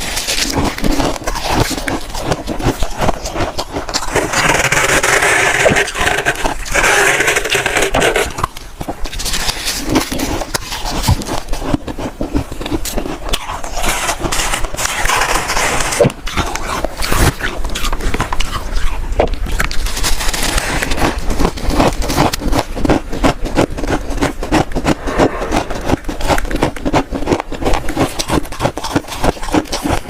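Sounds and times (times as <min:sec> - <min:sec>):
chewing crunchy frost: 0:00.0 - 0:30.0.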